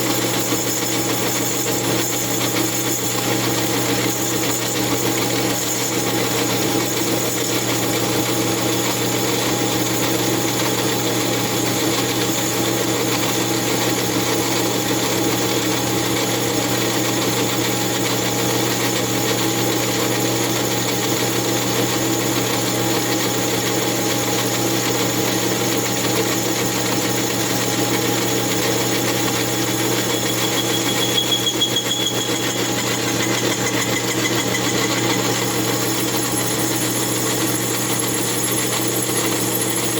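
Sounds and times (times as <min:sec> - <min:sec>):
lathe cutting metal: 0:24.5 - 0:39.9
brief high whine: 0:29.4 - 0:32.9.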